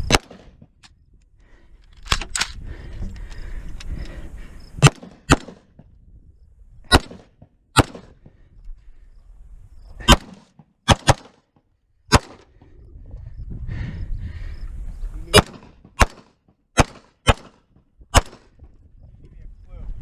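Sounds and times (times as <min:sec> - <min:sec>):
gunshots: 0:00.0 - 0:00.7, 0:04.8 - 0:05.8, 0:06.9 - 0:08.2, 0:10.0 - 0:11.4, 0:12.1 - 0:12.5, 0:15.3 - 0:18.5.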